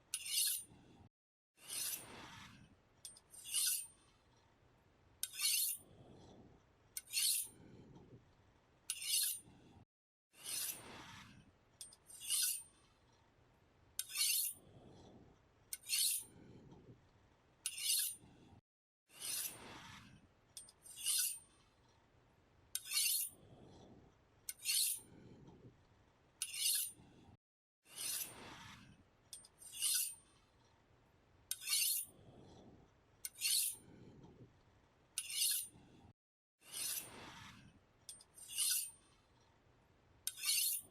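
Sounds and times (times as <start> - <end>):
knife sharpening strokes: 0.1 - 0.7, 1.6 - 2.1, 3.3 - 3.9, 5.2 - 5.8, 7.0 - 7.5, 8.9 - 9.4, 10.4 - 10.8, 12.1 - 12.7, 14.0 - 14.6, 15.8 - 16.3, 17.7 - 18.2, 19.2 - 19.6, 20.9 - 21.4, 22.8 - 23.3, 24.5 - 25.0, 26.4 - 27.0, 27.9 - 28.4, 29.6 - 30.2, 31.5 - 32.1, 33.3 - 33.8, 35.2 - 35.7, 36.6 - 37.2, 38.4 - 39.0, 40.3 - 40.9.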